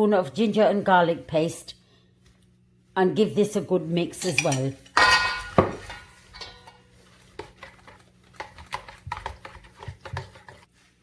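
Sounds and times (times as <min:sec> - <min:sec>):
spoon stirring thick marinade: 0:05.8 - 0:10.9.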